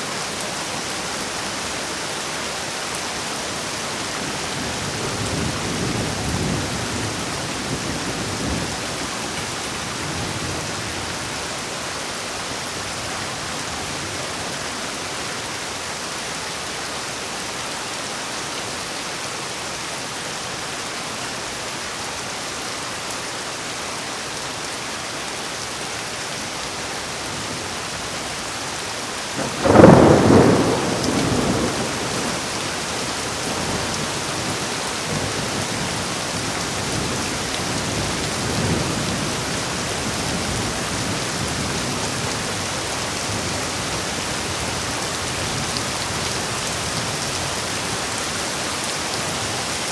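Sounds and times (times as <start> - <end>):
heavy rain falling: 0.0 - 49.9
loud thunderclap: 29.4 - 35.9.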